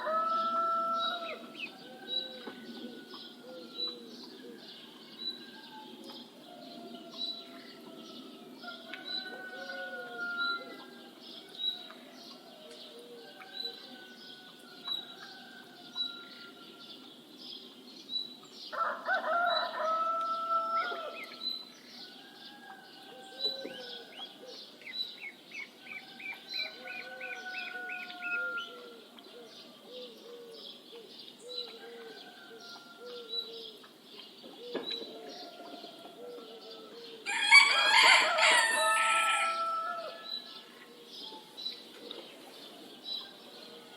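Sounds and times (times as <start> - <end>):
rooster crowing: 0.0 - 4.7, 6.6 - 10.9, 18.8 - 21.3, 26.0 - 29.0, 35.4 - 40.6.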